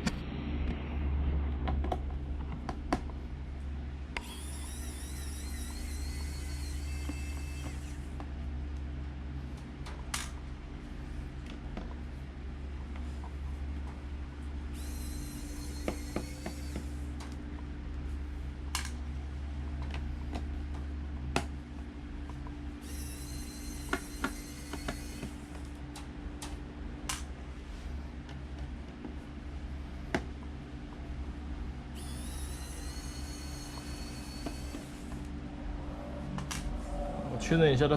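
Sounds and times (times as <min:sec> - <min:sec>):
steady low hum: 0:00.0 - 0:37.9
electric screwdriver whirring: 0:04.2 - 0:08.2, 0:14.7 - 0:17.1, 0:22.8 - 0:25.8, 0:31.9 - 0:35.3.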